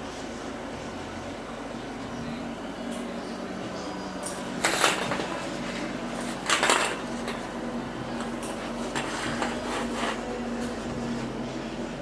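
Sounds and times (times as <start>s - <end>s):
steady low hum: 0.0s - 12.0s
hard objects clinking and clattering: 6.3s - 7.4s.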